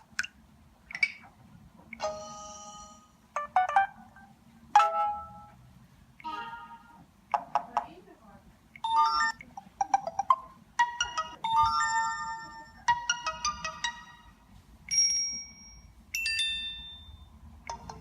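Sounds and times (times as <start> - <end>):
phone ringtones and notification tones: 2.0 - 5.6, 6.2 - 7.0, 8.8 - 18.0.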